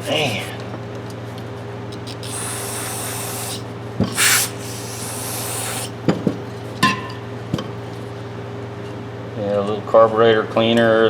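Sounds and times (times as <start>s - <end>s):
aerosol spray can hissing: 2.0s - 6.0s.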